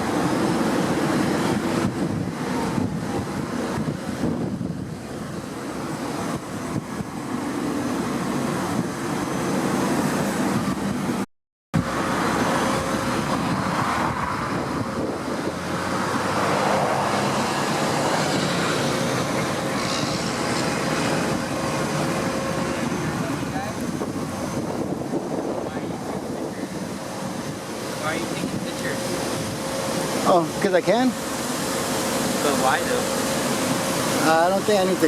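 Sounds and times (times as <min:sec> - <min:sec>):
wind buffeting microphone: 0:00.0 - 0:11.2, 0:11.8 - 0:35.0
steady low hum: 0:11.8 - 0:35.0.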